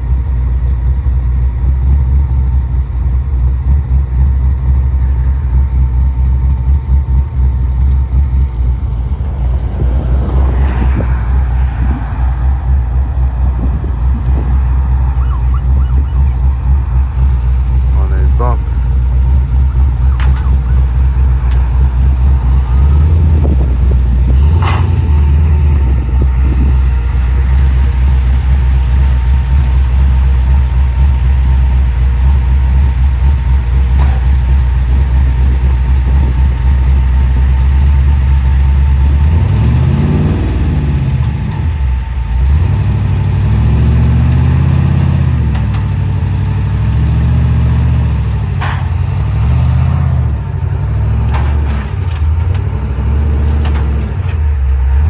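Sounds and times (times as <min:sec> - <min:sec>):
car engine idling and revving: 0:00.0 - 0:55.0.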